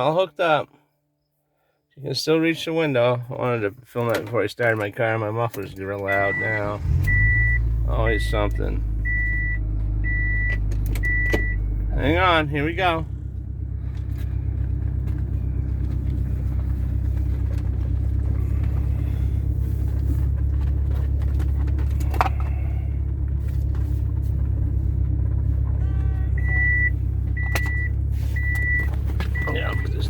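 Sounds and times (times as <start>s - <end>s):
car engine with rumbling exhaust: 3.6s - 30.0s
person talking: 11.9s - 13.1s.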